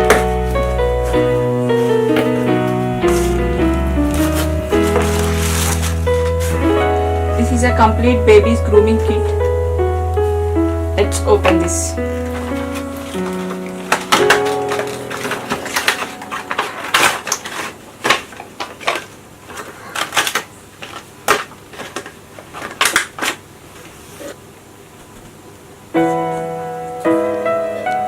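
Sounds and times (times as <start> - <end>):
soft piano music: 0.0 - 18.6, 25.9 - 28.0
packaging clicks taps and rustles: 12.3 - 24.0.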